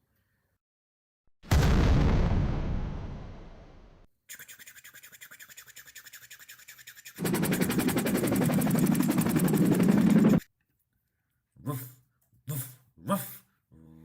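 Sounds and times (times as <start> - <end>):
synthetic automatic gunfire rattle: 7.2 - 10.4.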